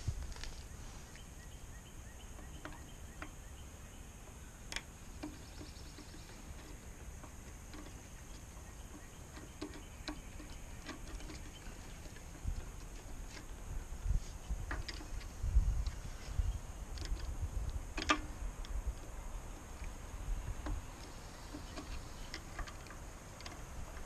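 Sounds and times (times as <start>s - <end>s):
steady high hiss: 0.0s - 24.0s
small ticks: 14.6s - 24.0s.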